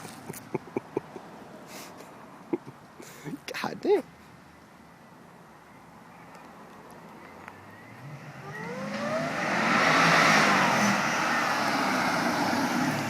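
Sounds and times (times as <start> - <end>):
car engine accelerating hard: 7.8 - 13.0.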